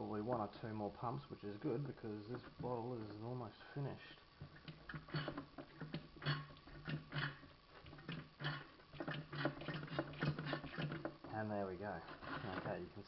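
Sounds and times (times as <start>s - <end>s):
hand pump clicking and knocking: 4.4s - 11.4s.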